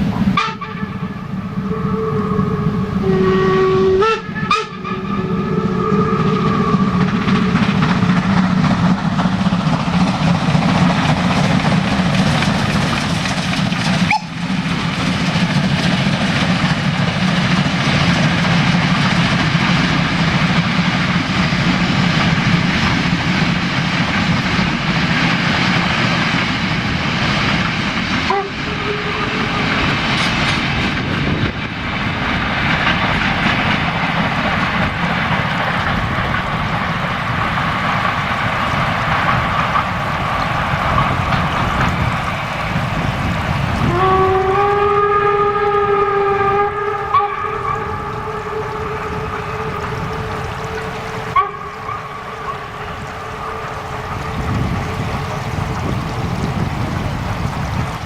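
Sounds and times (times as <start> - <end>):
steam train rolling rumble: 0.0 - 58.0
steam whistle: 0.4 - 7.8, 14.1 - 14.4, 28.3 - 30.3, 43.8 - 54.7.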